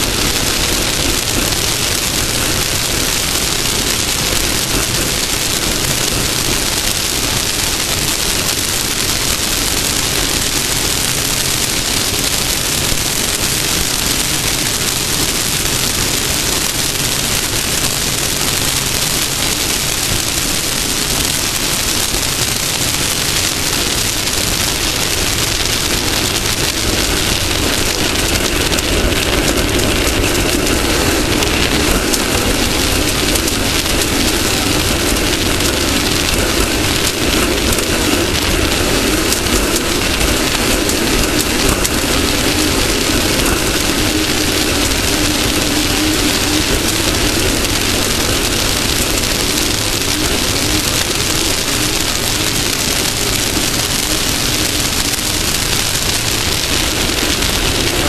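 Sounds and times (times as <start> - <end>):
wind and terrain rush: 26.6 - 47.8.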